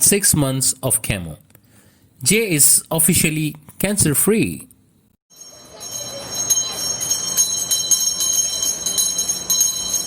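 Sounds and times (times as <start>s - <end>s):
metal bell ringing rapidly: 5.3s - 10.0s.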